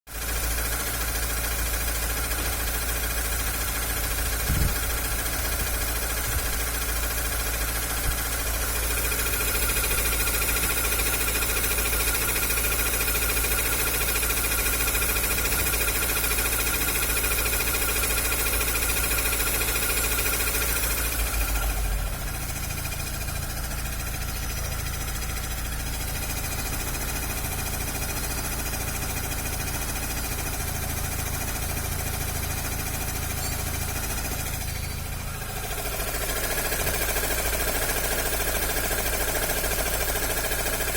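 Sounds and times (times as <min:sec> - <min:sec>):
abnormal engine noise: 0:00.1 - 0:40.9
car engine running: 0:00.1 - 0:40.9.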